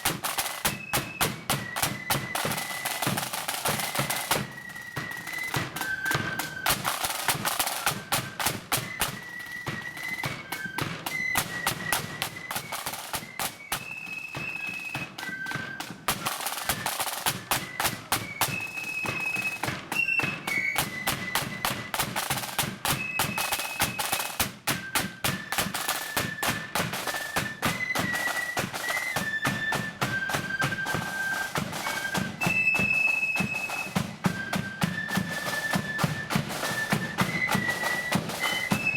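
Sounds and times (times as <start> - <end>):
flutes playing high tune: 0.0 - 38.9
rapid snare drumming: 0.0 - 38.9.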